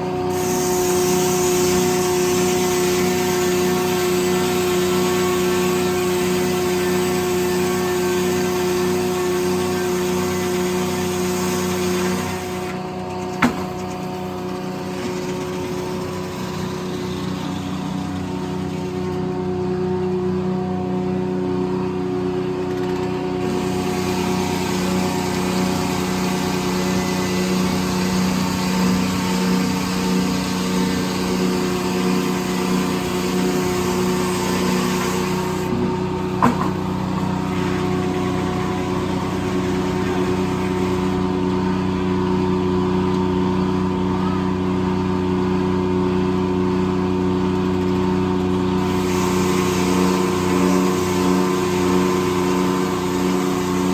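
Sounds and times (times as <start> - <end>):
sawmill engine droning: 0.0 - 53.9
harsh hiss: 0.3 - 5.1, 23.4 - 36.4, 48.8 - 53.9.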